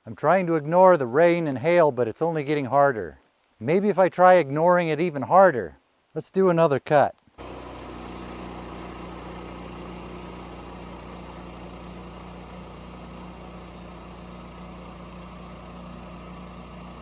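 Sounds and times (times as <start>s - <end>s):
sawmill engine running: 7.4s - 17.0s.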